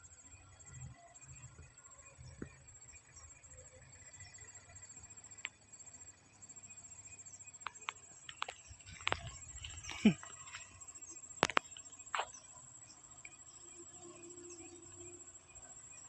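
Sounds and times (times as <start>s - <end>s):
insect chirping: 0.0s - 16.0s
sharp clicks: 11.4s - 12.3s.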